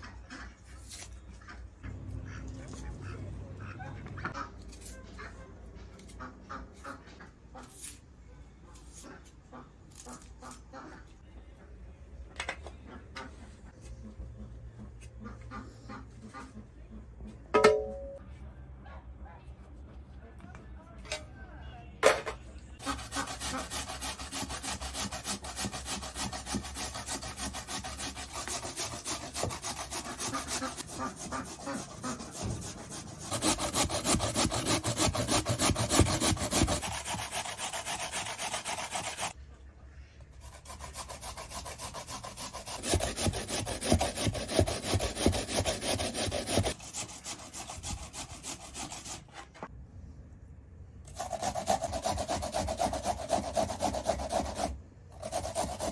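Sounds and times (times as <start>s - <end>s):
rhythmic scraping strokes: 22.8s - 39.4s.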